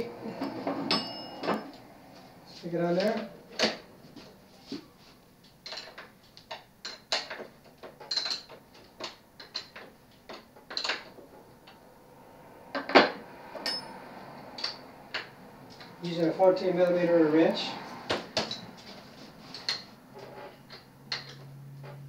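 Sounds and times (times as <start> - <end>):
metal clank: 0.3 - 1.8, 12.8 - 14.0
metal clicks and clinks: 5.4 - 11.8, 13.6 - 16.0.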